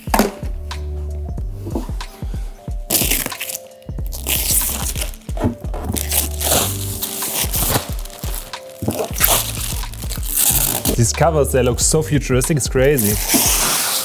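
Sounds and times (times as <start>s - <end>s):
background music with low bass: 0.0s - 14.0s
packaging crinkling and crunching: 2.9s - 11.1s, 13.0s - 13.7s.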